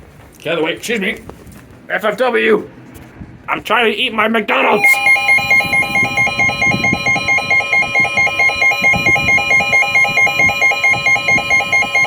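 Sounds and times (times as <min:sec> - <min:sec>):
steady alert tone: 0:04.6 - 0:12.0
rapid electronic beeping: 0:04.8 - 0:12.0.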